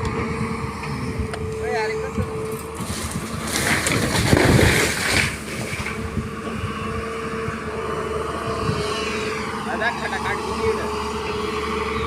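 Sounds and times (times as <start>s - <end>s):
excavator engine running: 0.0s - 12.0s
loud rough rattling: 2.5s - 6.3s.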